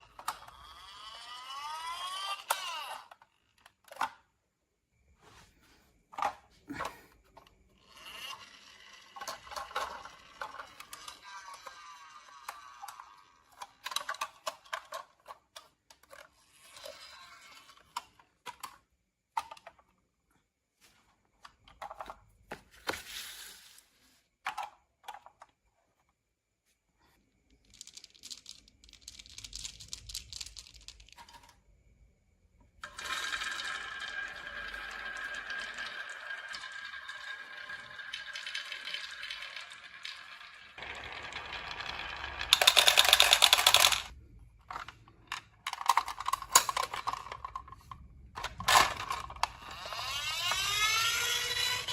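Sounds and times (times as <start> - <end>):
marbles rolling down wooden tracks: 0.1 - 3.4, 7.8 - 15.1, 27.5 - 31.6, 32.8 - 51.9
marbles clicking on wood: 0.2 - 3.0, 27.5 - 31.5, 32.9 - 44.2, 48.9 - 51.9.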